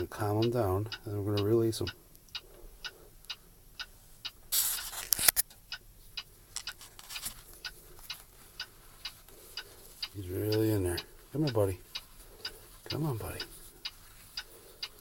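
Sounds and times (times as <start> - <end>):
rapid regular ticking: 0.0 - 4.5, 5.6 - 15.0
glove rustling: 6.6 - 15.0.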